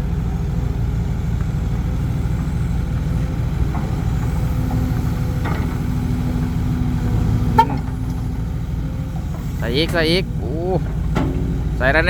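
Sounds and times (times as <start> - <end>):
diesel truck engine droning: 0.0 - 12.0.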